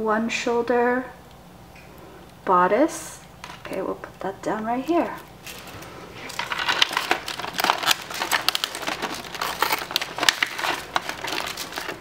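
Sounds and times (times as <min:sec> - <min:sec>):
packaging crinkling: 0:04.9 - 0:12.0.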